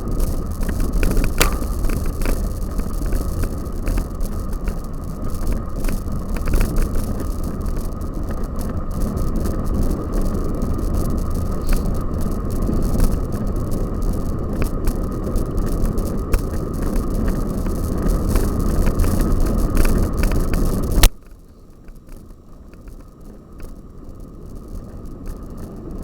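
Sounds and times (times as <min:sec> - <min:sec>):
tyres rumbling: 0:00.0 - 0:21.1
wind on microphone: 0:00.0 - 0:21.1
bike frame rattling: 0:00.0 - 0:21.3.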